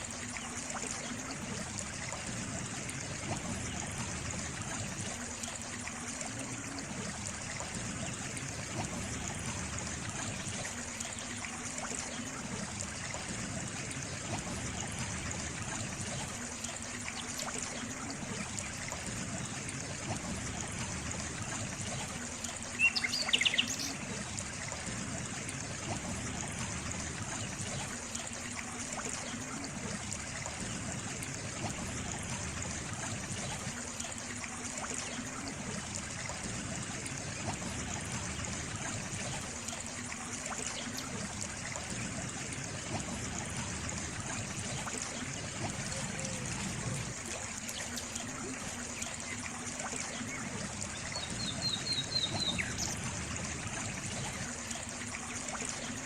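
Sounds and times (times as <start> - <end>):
water trickling: 0.0 - 56.0
bird chirping: 22.8 - 24.0.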